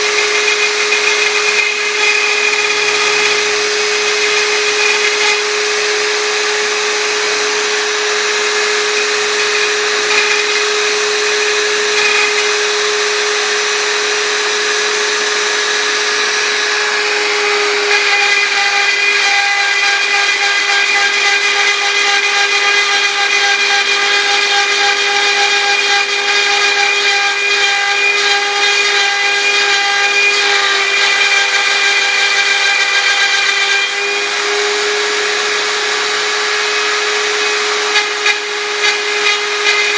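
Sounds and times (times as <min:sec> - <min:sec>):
router spindle whining: 0:00.0 - 0:39.9.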